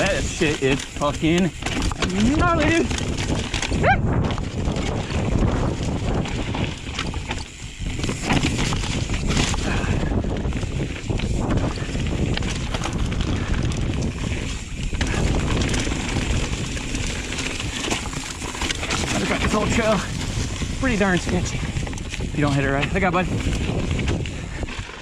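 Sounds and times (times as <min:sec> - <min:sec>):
bike rattling over rocks: 0:00.0 - 0:25.0
wind rushing over microphone: 0:00.0 - 0:25.0.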